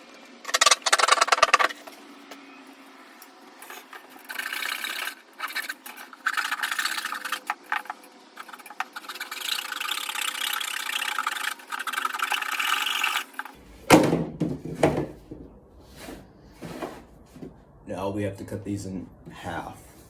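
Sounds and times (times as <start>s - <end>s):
cardboard scraping: 13.6s - 17.5s
loud thump: 13.8s - 15.5s.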